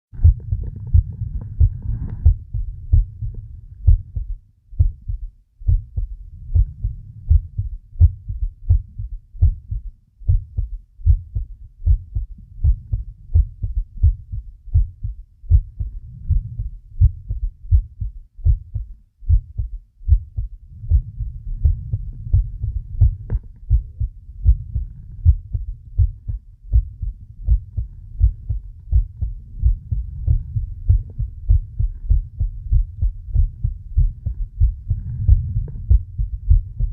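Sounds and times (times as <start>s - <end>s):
heartbeat thumps: 0.1s - 36.9s
low breathing: 0.2s - 3.9s, 15.8s - 17.4s, 20.6s - 26.1s, 27.7s - 36.9s.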